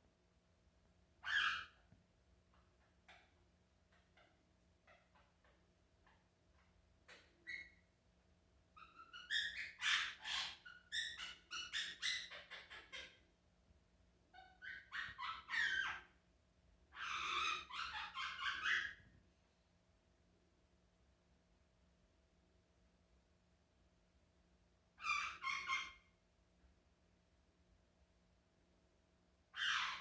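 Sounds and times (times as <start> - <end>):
parrot chattering calls: 1.2 - 1.8, 17.0 - 19.0, 29.6 - 30.0.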